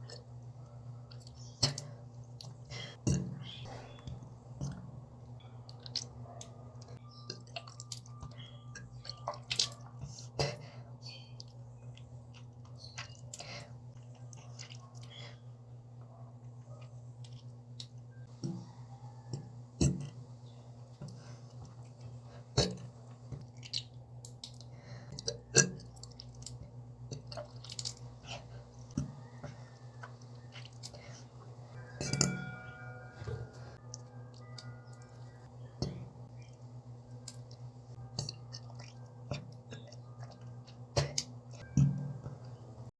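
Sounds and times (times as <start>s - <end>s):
steady low hum: 0.0s - 42.9s.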